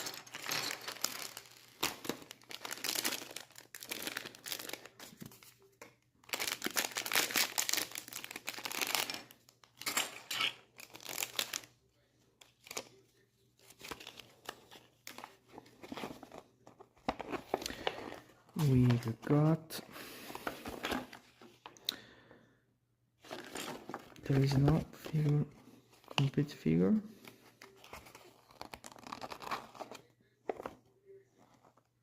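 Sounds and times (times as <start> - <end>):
packaging crinkling and tearing: 0.0 - 5.6, 6.2 - 11.7, 23.2 - 25.1, 27.7 - 30.7.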